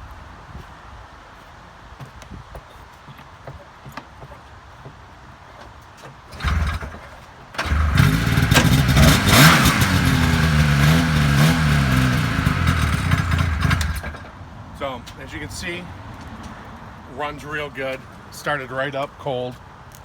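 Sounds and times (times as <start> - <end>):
snowmobile engine starting and revving: 6.3 - 14.3.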